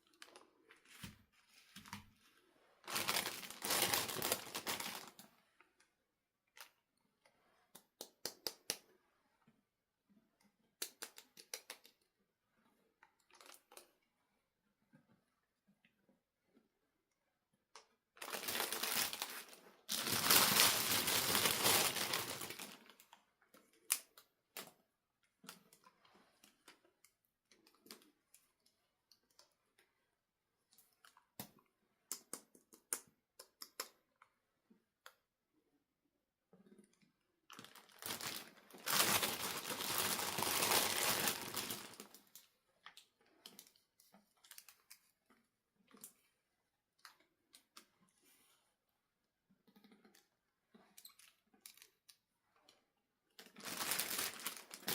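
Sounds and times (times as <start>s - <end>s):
packaging crinkling and rustling: 2.8s - 5.3s, 18.2s - 23.2s, 37.5s - 42.5s, 53.4s - 54.9s.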